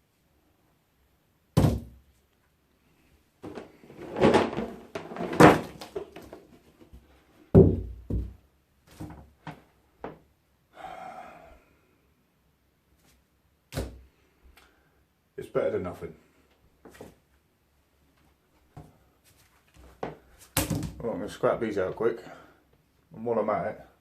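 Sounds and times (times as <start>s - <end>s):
scrap items thudding and knocking: 3.4s - 7.0s.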